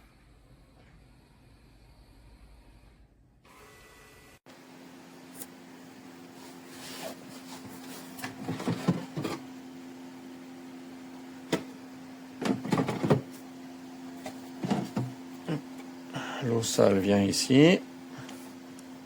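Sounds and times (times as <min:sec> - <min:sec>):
docking station mechanical hum: 0:00.0 - 0:19.0.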